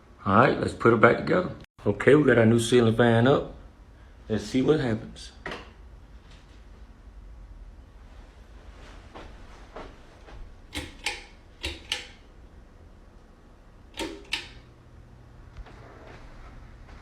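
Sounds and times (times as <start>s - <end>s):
faint low hum: 0.0s - 17.0s
switch clicking: 10.7s - 12.2s, 13.9s - 14.7s.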